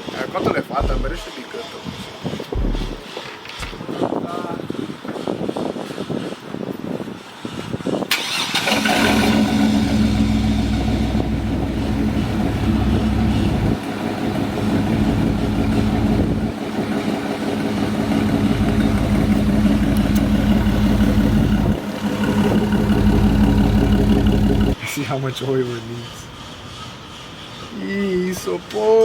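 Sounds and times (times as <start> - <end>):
pickup engine starting and idling: 8.1 - 24.8.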